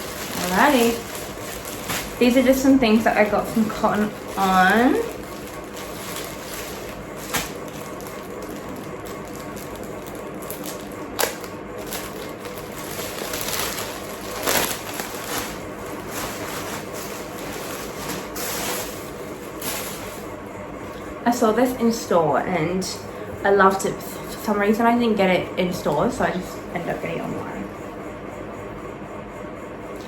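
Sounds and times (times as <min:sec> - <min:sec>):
clothes and packaging crinkling: 0:00.0 - 0:21.0.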